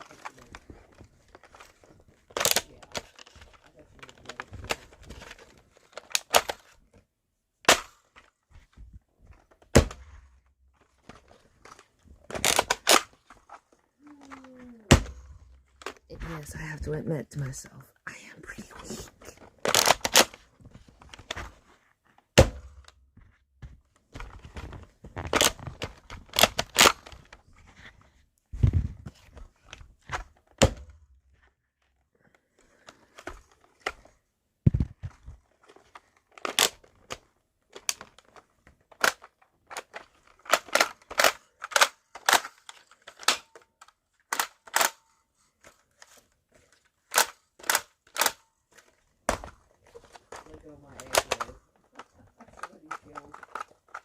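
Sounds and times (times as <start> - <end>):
objects clicking and knocking: 45.6 - 54.0.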